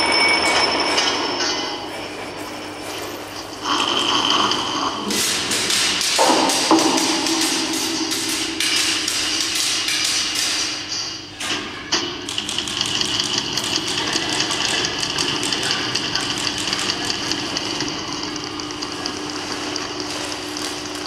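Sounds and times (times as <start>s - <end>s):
steady low hum: 0.0s - 21.0s
sharp hit: 5.1s - 10.9s
rapid tapping and clicking: 5.1s - 11.1s, 11.9s - 21.0s.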